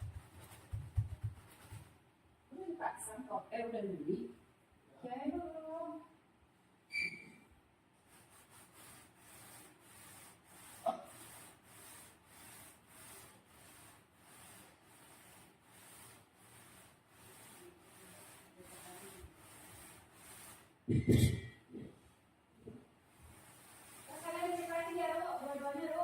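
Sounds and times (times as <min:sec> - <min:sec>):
faint rhythmic rubbing: 0:00.0 - 0:02.0, 0:08.0 - 0:26.0.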